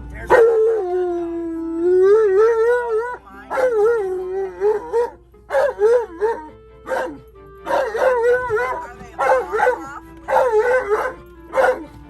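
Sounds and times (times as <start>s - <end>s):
dog howling: 0.3s - 11.9s
dog yelp: 2.8s - 11.9s.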